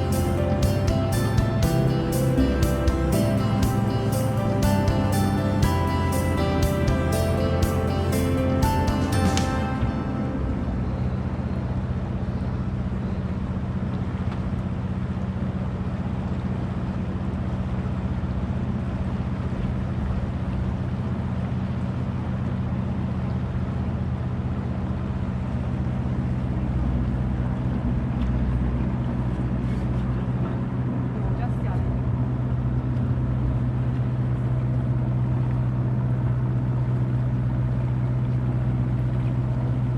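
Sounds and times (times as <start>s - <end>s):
water noise: 0.0s - 15.0s
boat motor humming: 0.0s - 15.2s, 20.4s - 39.9s.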